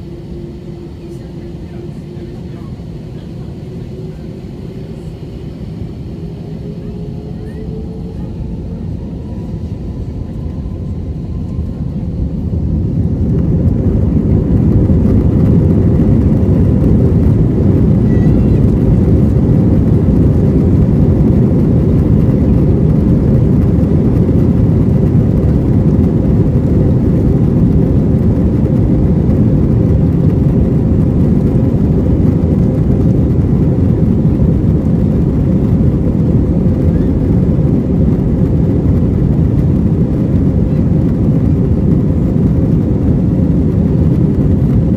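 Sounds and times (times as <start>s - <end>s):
jet engines rumbling: 0.0s - 44.9s.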